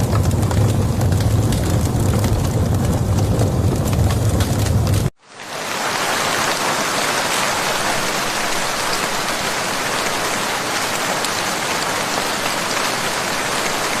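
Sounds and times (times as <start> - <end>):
hiss of falling water: 5.2 - 14.0.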